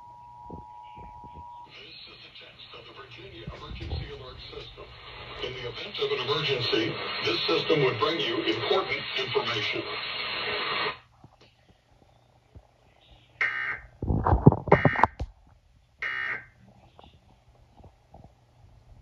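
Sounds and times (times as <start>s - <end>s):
digital data tone bursts: 14.7s - 15.1s.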